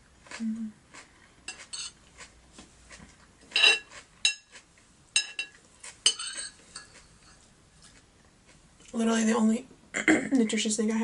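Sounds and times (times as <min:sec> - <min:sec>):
cutlery clinking on plate: 0:01.5 - 0:02.0, 0:03.5 - 0:04.6, 0:05.2 - 0:07.4.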